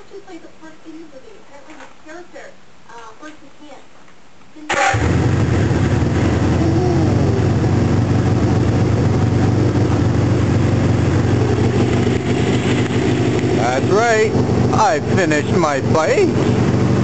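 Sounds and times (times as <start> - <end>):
motorcycle engine idling: 4.8 - 17.0.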